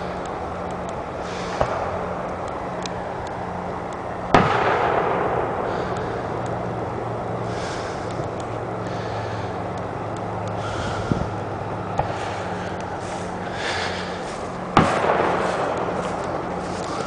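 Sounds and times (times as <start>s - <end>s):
low engine hum: 0.0s - 17.0s
firework bang echoing: 4.3s - 5.7s, 14.8s - 17.0s.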